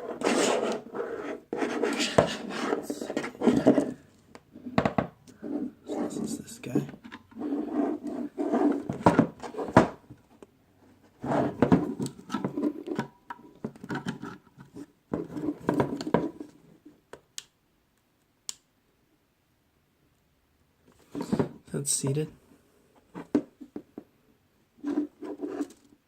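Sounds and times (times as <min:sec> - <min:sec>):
plastic parts scraping and rustling: 0:00.2 - 0:04.8, 0:05.4 - 0:16.6, 0:24.8 - 0:26.0.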